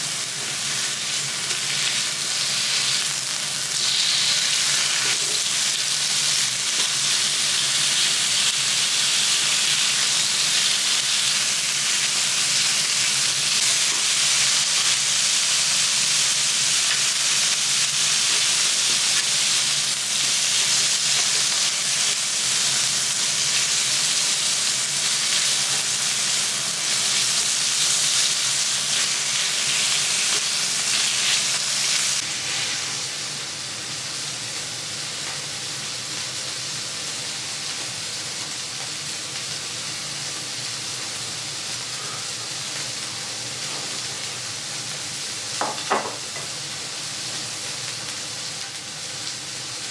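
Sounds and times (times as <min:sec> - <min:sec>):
meat sizzling on a griddle: 0:00.0 - 0:49.9.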